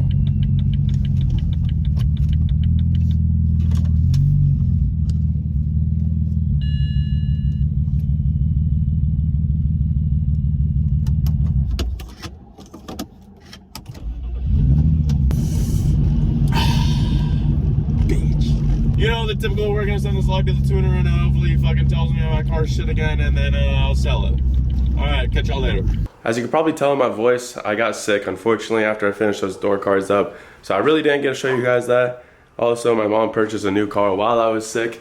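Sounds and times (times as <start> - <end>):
car engine running: 0.0 - 26.1
short electronic chime: 6.6 - 7.7.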